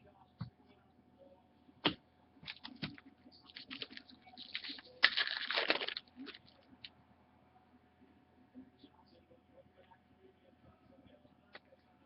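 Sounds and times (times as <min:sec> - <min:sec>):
packaging rustling: 0:02.5 - 0:06.5.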